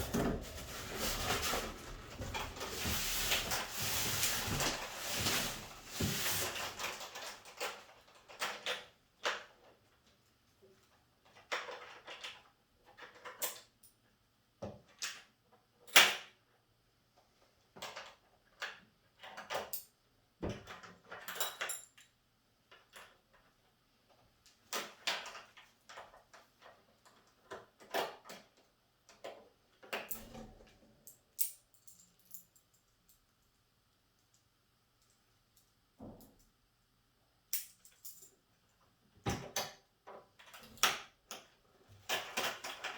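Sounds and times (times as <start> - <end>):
parts and packaging handled: 0.0 - 8.6.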